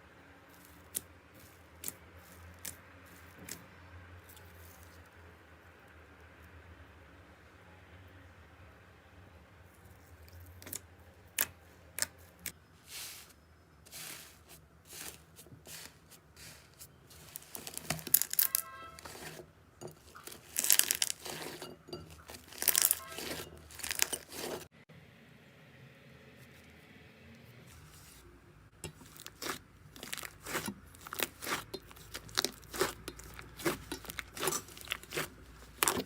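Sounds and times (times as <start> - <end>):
slime crackling and popping: 17.2 - 19.3, 20.0 - 21.6, 22.2 - 24.6, 28.8 - 36.0.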